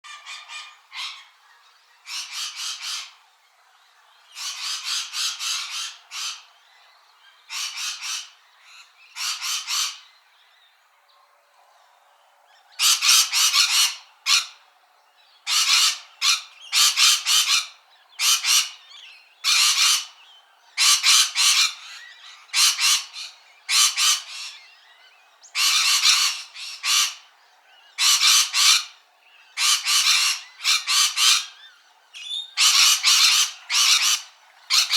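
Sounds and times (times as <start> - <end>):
parrot squawking harshly: 28.0 - 28.9, 29.6 - 31.5, 32.6 - 34.9.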